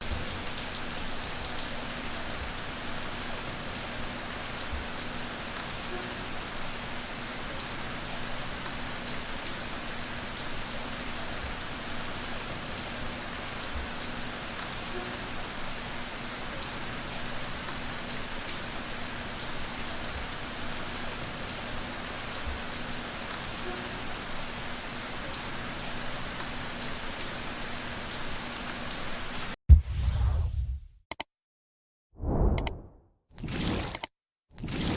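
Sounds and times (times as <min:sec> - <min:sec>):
steady rain falling: 0:00.0 - 0:29.6
loud low burst: 0:29.7 - 0:31.0, 0:32.2 - 0:33.0.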